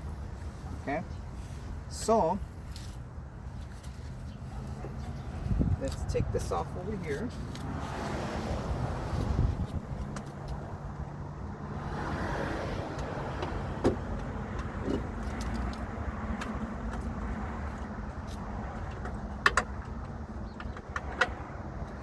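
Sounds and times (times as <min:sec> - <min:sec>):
steady low rumble: 0:00.0 - 0:12.0
tools clicking and knocking: 0:17.8 - 0:22.0.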